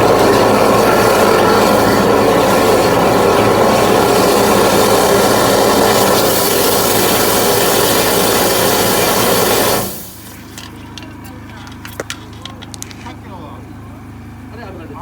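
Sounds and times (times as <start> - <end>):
water jet hissing: 0.0 - 10.7
drain jetting machine engine: 0.0 - 15.0.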